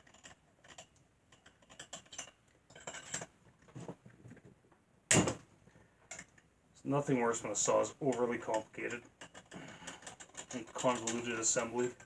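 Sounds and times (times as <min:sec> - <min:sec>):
metal tools clicking and clinking: 0:08.1 - 0:12.0
metallic clatter: 0:08.1 - 0:12.0.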